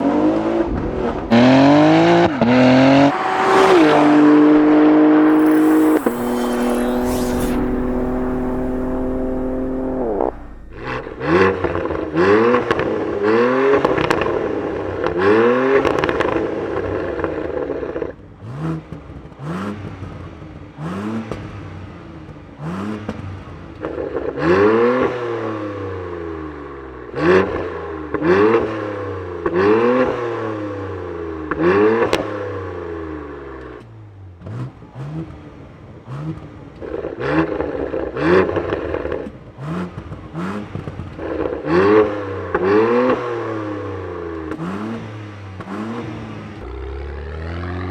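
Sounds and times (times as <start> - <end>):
car engine revving: 1.3 - 11.6
exhaust cracks: 2.8 - 11.6.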